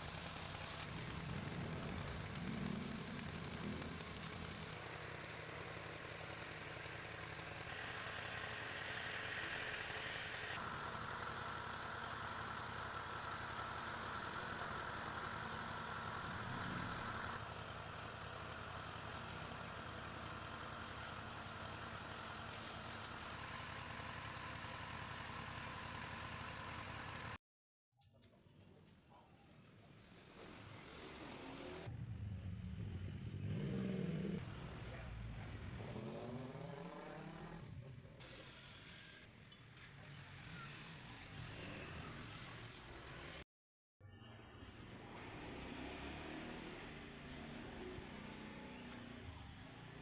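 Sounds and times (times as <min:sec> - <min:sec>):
motor hum: 0:00.0 - 0:20.3.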